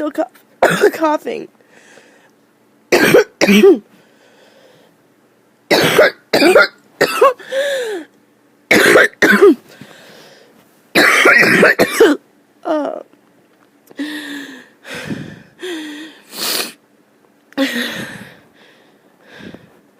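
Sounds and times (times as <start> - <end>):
person coughing harshly: 0.6 - 1.0, 2.9 - 3.9, 5.7 - 7.7, 8.7 - 9.6, 11.0 - 12.2, 17.6 - 18.4.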